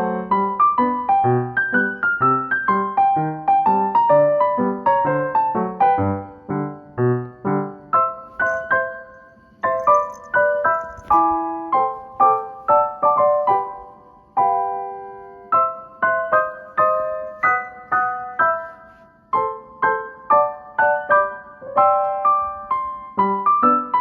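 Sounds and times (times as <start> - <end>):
solo piano playing: 0.0 - 24.0.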